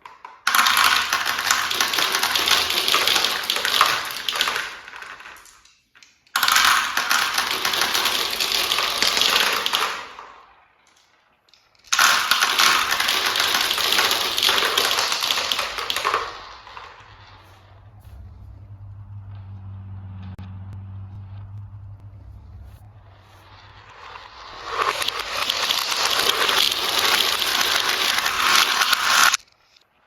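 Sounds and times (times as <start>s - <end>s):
marbles rattling on plastic track: 0.0s - 17.9s, 23.4s - 29.8s
low steady hum: 15.8s - 25.3s.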